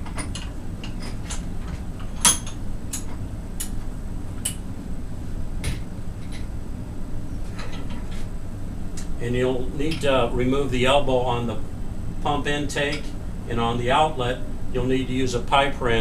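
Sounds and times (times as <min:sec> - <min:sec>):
steady low hum: 0:00.0 - 0:16.0
metal clinks and knocks: 0:02.0 - 0:03.8.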